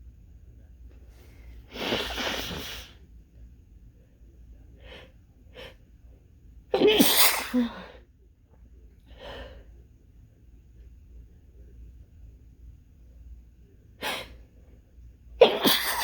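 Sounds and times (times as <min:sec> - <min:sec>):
person sneezing hard: 0:01.7 - 0:03.0, 0:06.8 - 0:07.9, 0:15.4 - 0:16.0.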